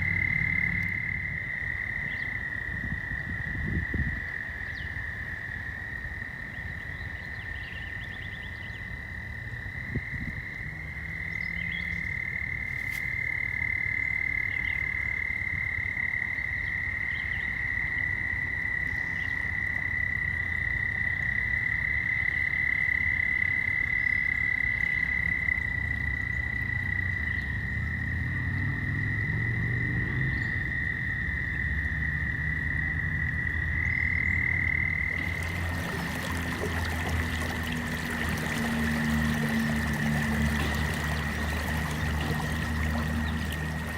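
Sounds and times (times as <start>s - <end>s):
frogs calling in chorus: 33.8s - 43.9s.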